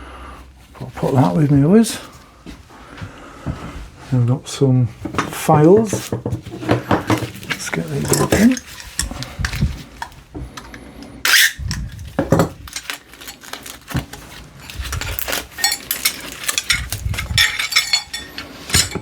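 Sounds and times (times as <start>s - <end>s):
steel files clinking: 5.7s - 19.0s.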